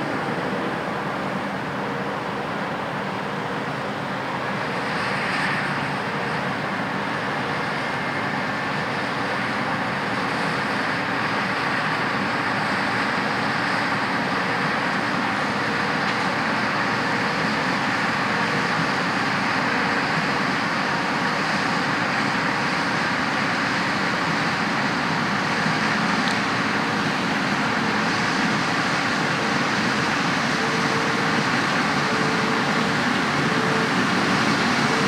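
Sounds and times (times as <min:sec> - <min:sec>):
heavy farm machinery drone: 0:14.9 - 0:35.0.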